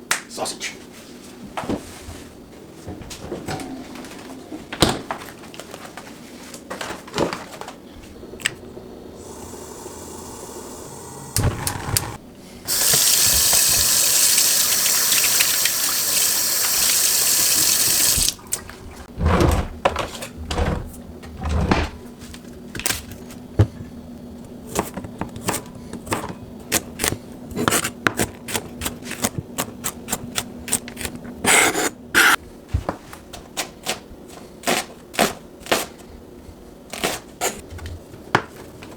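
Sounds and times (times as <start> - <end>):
kitchen tap running: 9.2 - 19.0.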